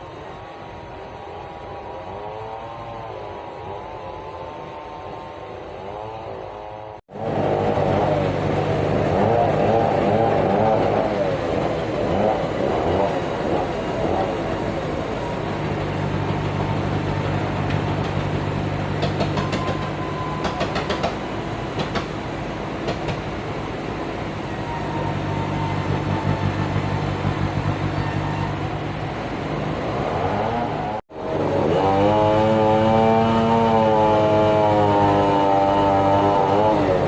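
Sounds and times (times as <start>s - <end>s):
sawmill machinery hum: 0.0s - 37.0s
machine whine: 7.1s - 37.0s
sharp clattering knocks: 19.0s - 21.2s, 21.8s - 22.2s.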